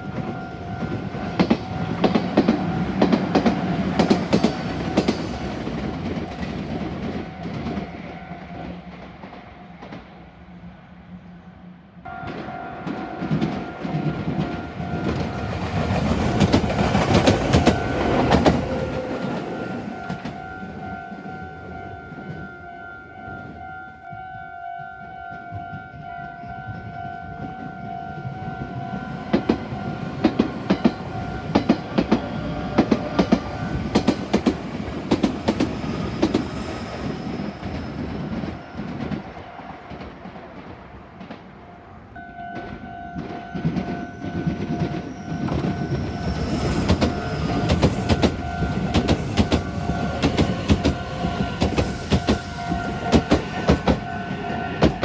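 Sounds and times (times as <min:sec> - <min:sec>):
train wheels clacking over rail joints: 0:00.9 - 0:07.9, 0:12.3 - 0:20.4, 0:29.2 - 0:39.2, 0:43.2 - 0:55.0
level crossing warning bell: 0:12.1 - 0:33.9, 0:42.2 - 0:55.0.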